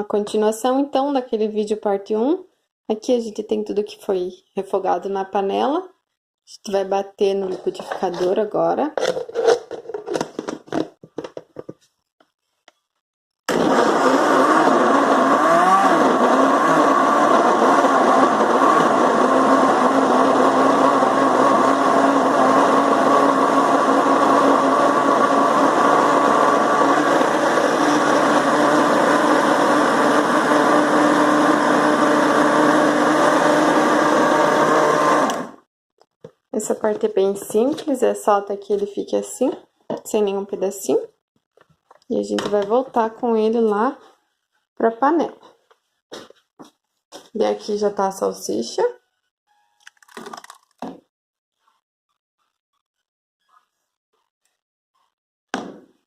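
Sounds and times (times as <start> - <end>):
blender running: 13.5 - 35.6.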